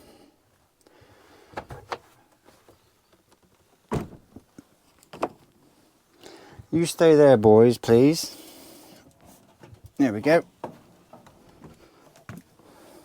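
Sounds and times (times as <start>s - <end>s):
knocks and clunks: 1.5s - 2.1s, 3.9s - 4.5s.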